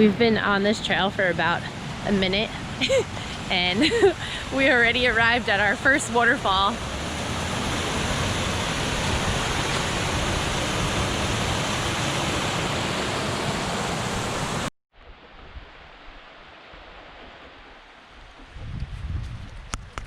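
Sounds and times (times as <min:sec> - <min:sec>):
waterfall roaring: 0:00.0 - 0:14.7
quiet rush of water: 0:00.0 - 0:18.7.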